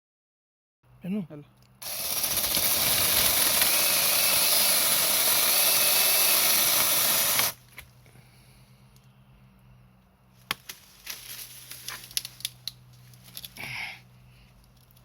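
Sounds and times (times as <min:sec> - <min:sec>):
battery chainsaw whirring: 0:01.8 - 0:07.6.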